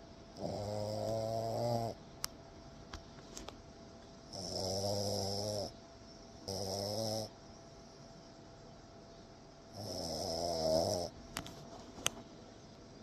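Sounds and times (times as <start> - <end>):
dog snoring: 0.4 - 2.0, 4.3 - 5.8, 6.4 - 7.3, 9.7 - 11.2.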